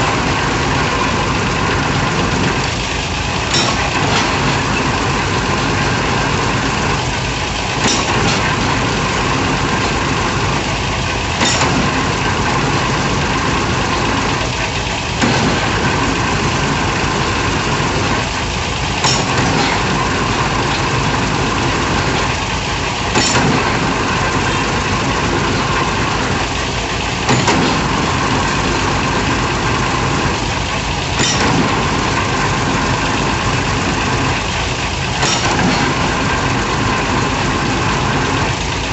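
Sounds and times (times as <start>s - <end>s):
diesel engine running: 0.0s - 38.9s
sharp metallic clank: 3.4s - 7.0s, 7.8s - 10.5s, 11.4s - 14.4s, 15.2s - 18.3s, 18.9s - 22.4s, 23.1s - 26.4s, 27.2s - 29.9s, 31.2s - 34.2s, 35.2s - 37.6s.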